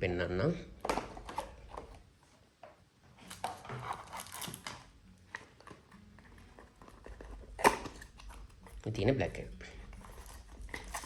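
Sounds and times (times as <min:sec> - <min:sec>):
packaging rustling: 0:03.2 - 0:08.9, 0:09.6 - 0:11.0.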